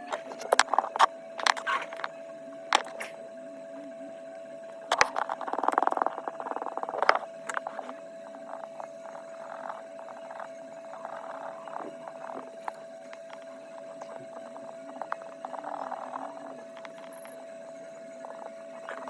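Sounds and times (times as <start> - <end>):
electrical hum: 0.0 - 19.0
hand tools clicking and scraping: 0.2 - 2.1, 2.8 - 3.1, 4.9 - 7.9.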